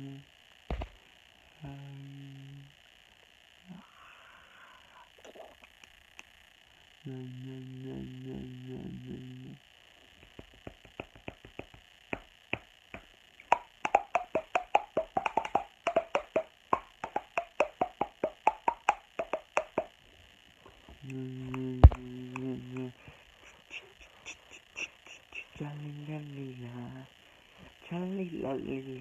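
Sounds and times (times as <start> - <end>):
child making mouth pops: 10.2 - 19.9, 21.1 - 22.9.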